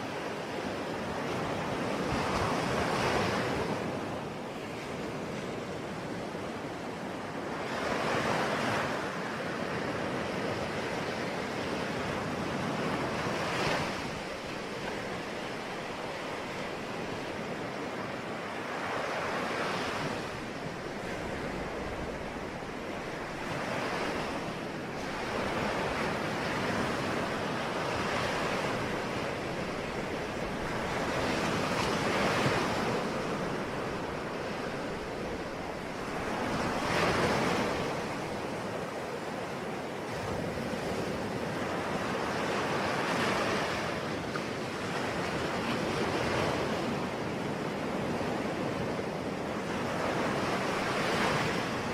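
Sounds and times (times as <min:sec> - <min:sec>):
ocean waves surf rushing: 0:06.5 - 0:51.9.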